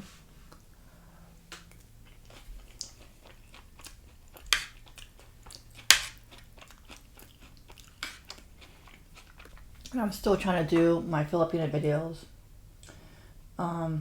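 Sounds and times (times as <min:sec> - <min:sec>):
chewing crunchy tostada shell: 0:01.4 - 0:10.0.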